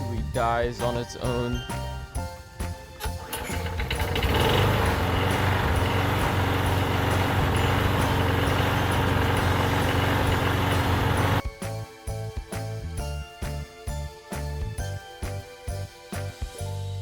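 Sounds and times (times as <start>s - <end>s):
string trimmer engine idling: 3.2s - 11.4s.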